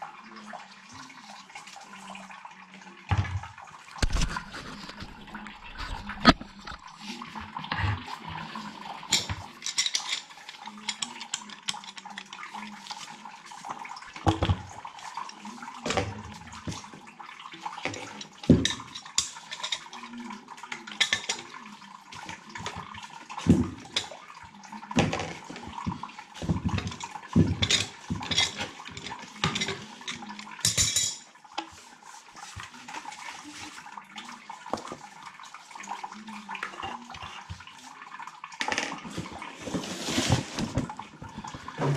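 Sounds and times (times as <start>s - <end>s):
pipe fittings clanking: 3.2s - 14.8s, 25.0s - 31.7s, 38.6s - 41.9s.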